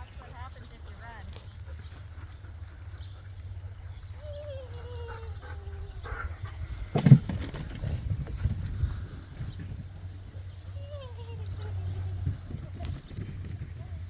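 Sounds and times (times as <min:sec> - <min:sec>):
soft thuds: 0:06.8 - 0:08.5.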